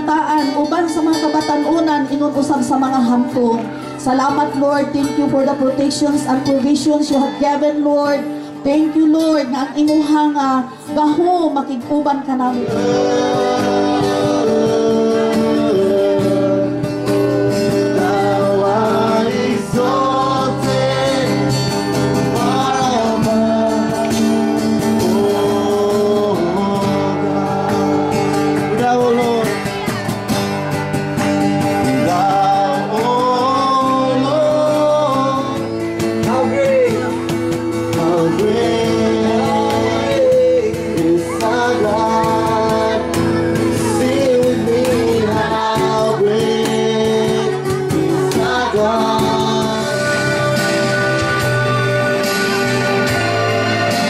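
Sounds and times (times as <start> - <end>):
guitar chords: 0.0 - 54.0
person singing: 11.9 - 30.3, 31.8 - 54.0.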